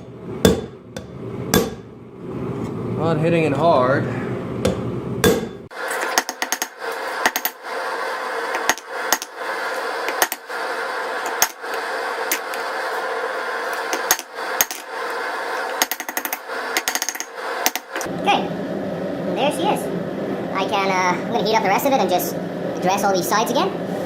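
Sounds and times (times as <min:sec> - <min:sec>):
hammer blows on hot steel anvil: 0:00.0 - 0:01.9, 0:04.6 - 0:05.7.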